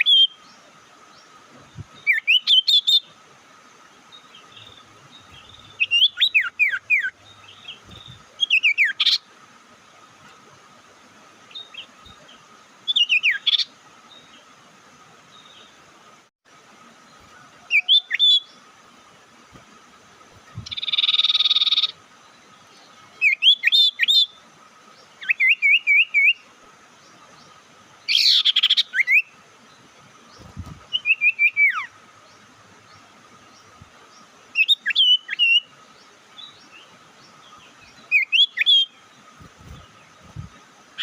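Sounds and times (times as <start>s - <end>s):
bird whistled chirps: 2.0s - 3.1s, 25.2s - 26.4s, 30.9s - 31.9s, 34.6s - 35.7s.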